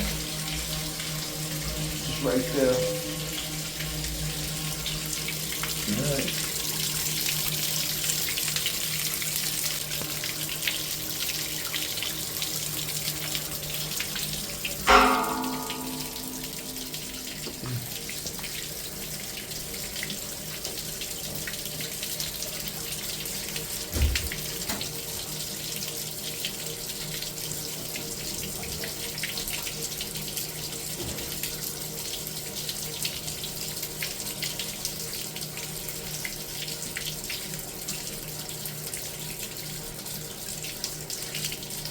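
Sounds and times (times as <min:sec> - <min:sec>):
water hissing from leak: 0:00.0 - 0:41.9
loud metallic clang: 0:14.9 - 0:17.6
dull thump: 0:23.9 - 0:24.4.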